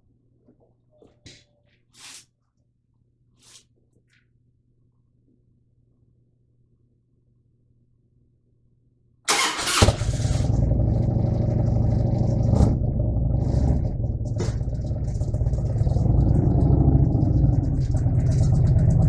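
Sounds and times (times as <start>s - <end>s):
engine cranking and idling: 9.3s - 19.0s.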